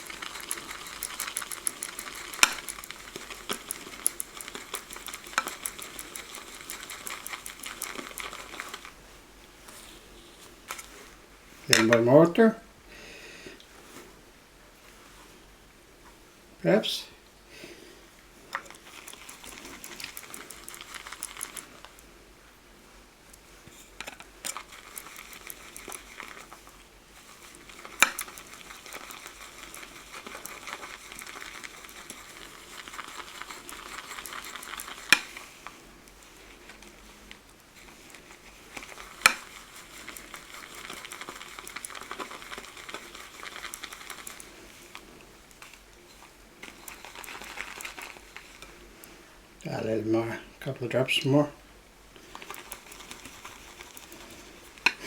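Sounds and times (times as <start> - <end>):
shaving brush swishing lather: 0.0 - 9.1, 18.6 - 22.1, 24.4 - 49.9, 52.2 - 55.0.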